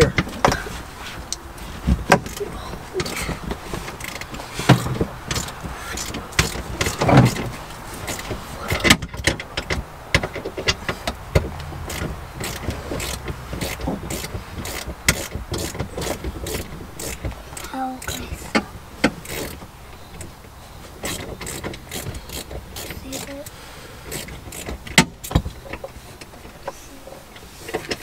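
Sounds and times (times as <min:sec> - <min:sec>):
socket ratchet clicking: 0:24.1 - 0:25.8.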